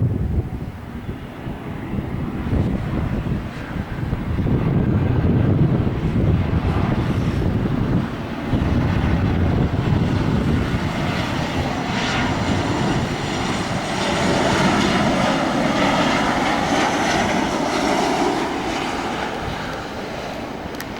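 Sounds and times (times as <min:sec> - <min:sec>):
jet engine whine: 0:00.0 - 0:20.9
jet engines rumbling: 0:00.0 - 0:20.9.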